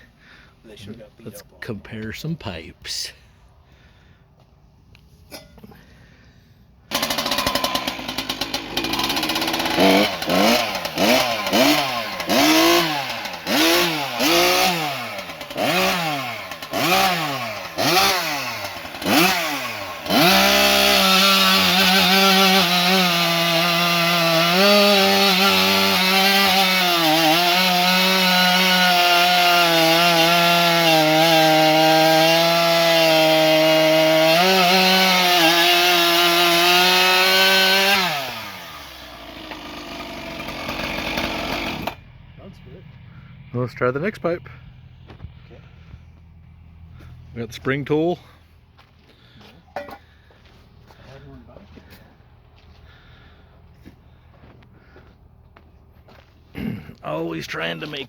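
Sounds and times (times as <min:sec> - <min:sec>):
chainsaw revving: 0:06.9 - 0:42.1.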